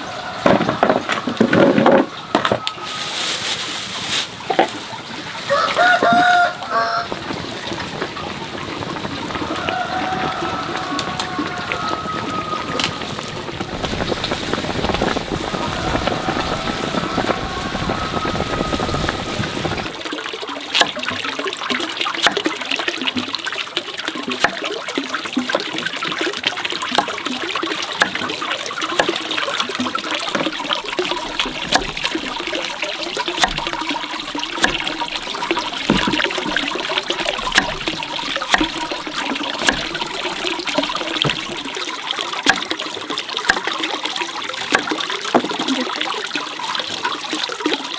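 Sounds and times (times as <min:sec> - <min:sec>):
water trickling and splashing: 0:00.0 - 0:47.9.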